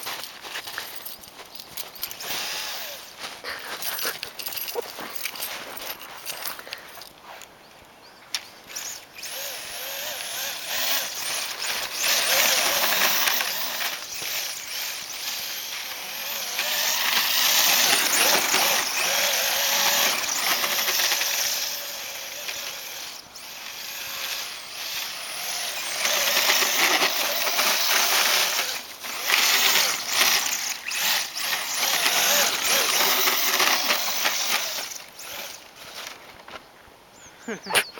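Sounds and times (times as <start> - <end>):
toy car electric motor whining: 2.0 - 3.2, 8.7 - 36.2.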